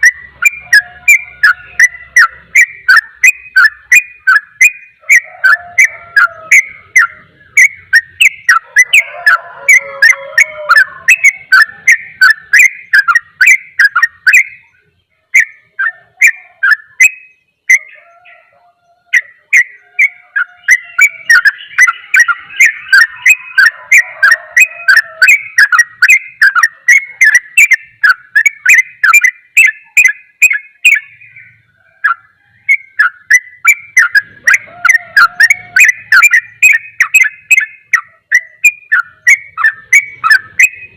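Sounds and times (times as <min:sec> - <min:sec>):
bulbul chattering song: 0:00.0 - 0:40.9.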